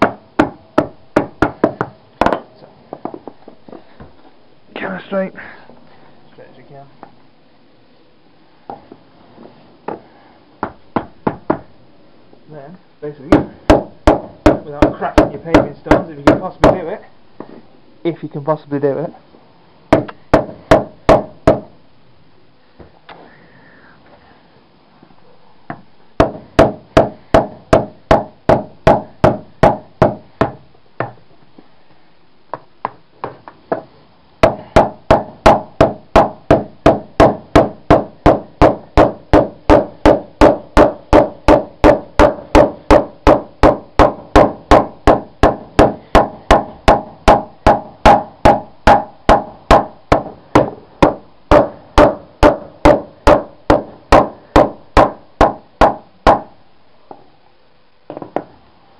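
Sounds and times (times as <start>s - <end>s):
hammer pounding metal pipe: 13.3s - 16.8s, 19.9s - 21.7s, 26.2s - 30.6s, 34.4s - 56.5s.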